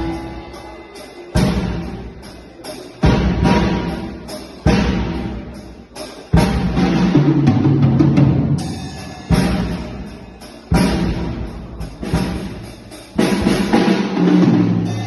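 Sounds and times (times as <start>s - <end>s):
drum kit heavy pattern: 0.0s - 15.0s.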